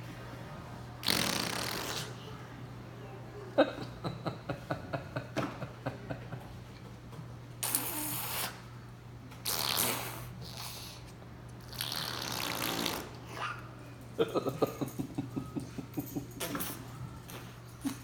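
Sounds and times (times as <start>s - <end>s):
girl blowing with mouth: 1.0s - 2.1s, 7.6s - 8.6s, 9.4s - 11.0s, 11.7s - 13.2s.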